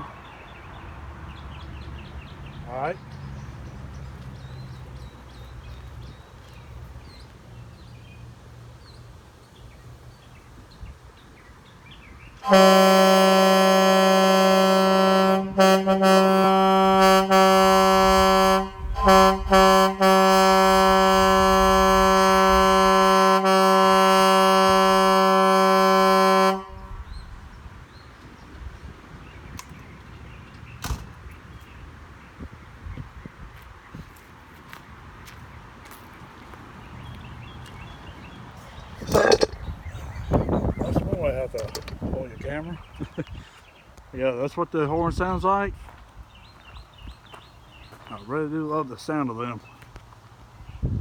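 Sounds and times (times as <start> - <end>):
faint outdoor background: 0.0 - 51.0
distant truck air horn blast: 12.4 - 27.1, 39.0 - 39.6.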